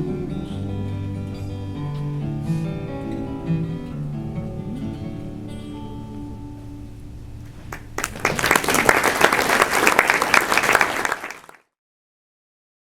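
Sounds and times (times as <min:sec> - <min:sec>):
audience applause: 0:07.6 - 0:11.6.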